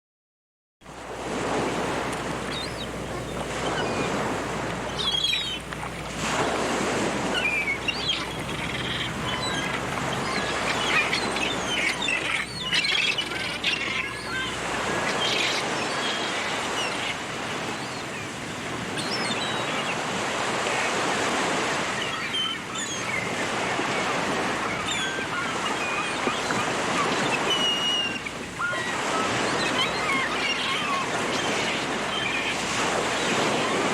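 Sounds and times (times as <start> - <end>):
sea waves breaking on shore: 0.8 - 33.9
seagulls calling: 1.3 - 33.9.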